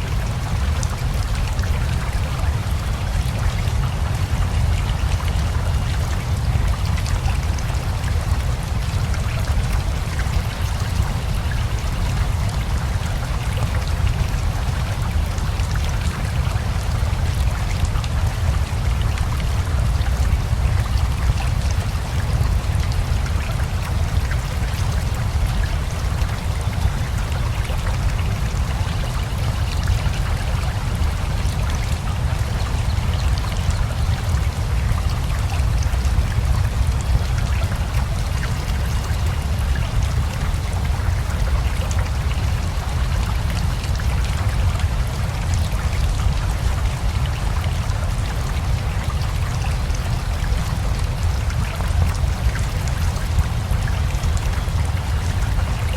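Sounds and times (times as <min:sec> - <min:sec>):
rushing river water: 0:00.0 - 0:55.9
steady rain: 0:00.0 - 0:55.9.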